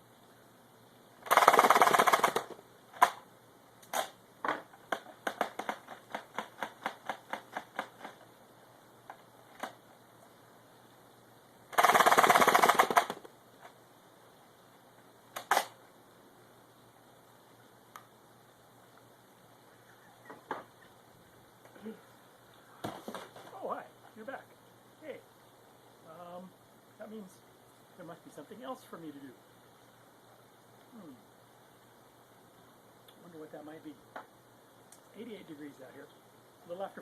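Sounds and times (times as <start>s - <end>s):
foam dart blaster firing bursts: 1.2s - 3.2s, 11.7s - 13.3s
sharp clicks: 1.2s - 3.2s, 3.8s - 4.2s, 11.7s - 13.8s, 15.3s - 15.8s.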